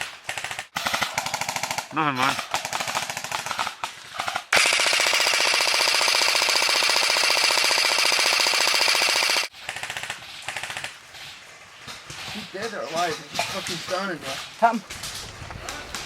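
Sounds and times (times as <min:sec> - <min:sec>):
airsoft gun firing full-auto: 0:00.3 - 0:10.9.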